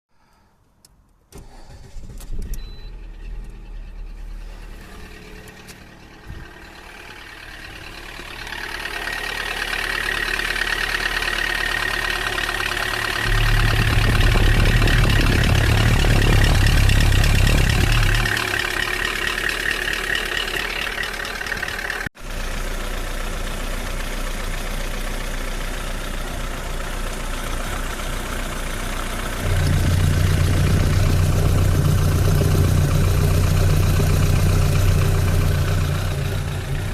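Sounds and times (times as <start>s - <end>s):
car engine starting and knocking: 0.9s - 36.9s.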